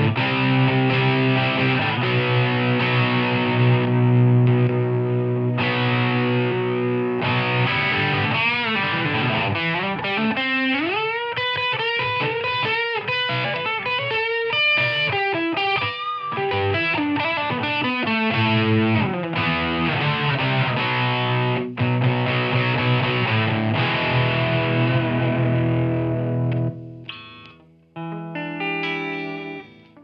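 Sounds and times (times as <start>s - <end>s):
distorted electric guitar: 0.0s - 30.0s.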